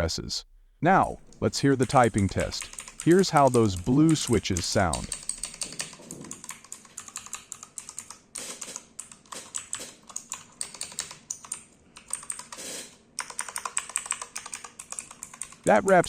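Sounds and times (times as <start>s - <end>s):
mechanical keyboard clicky keystrokes: 1.2s - 12.6s, 13.2s - 16.0s.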